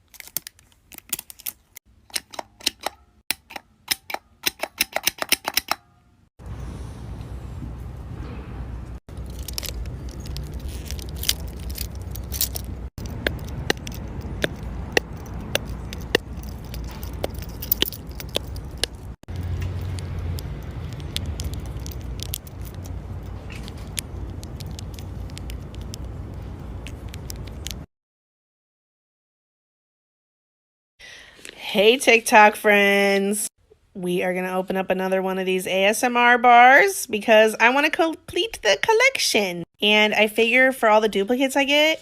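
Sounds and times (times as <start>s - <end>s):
low rumble: 6.4s - 27.8s
fidget toys clicking and snapping: 9.2s - 27.8s.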